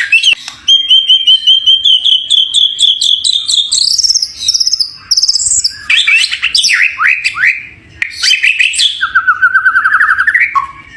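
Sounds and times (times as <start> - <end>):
bird singing trills and whistles: 0.0 - 10.9.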